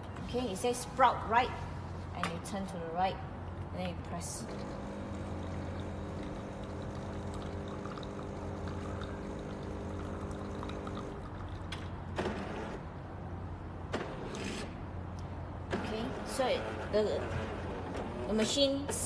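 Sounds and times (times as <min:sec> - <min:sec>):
espresso machine pump humming: 0:04.4 - 0:12.8
water pouring out: 0:05.4 - 0:12.0.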